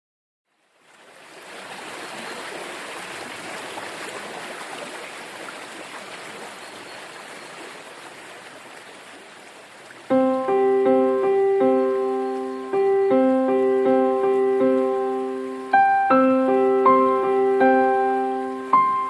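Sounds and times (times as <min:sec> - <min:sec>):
stream water flowing: 0:00.5 - 0:19.0
sustained piano notes: 0:10.1 - 0:19.0.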